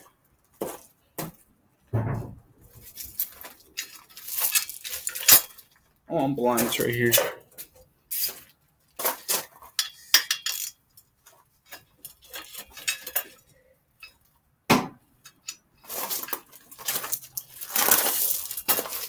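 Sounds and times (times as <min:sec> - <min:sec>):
sharp knock: 0:02.0 - 0:02.5
metal tools clinking: 0:03.0 - 0:05.6, 0:09.3 - 0:10.8, 0:11.7 - 0:14.2, 0:15.2 - 0:19.0.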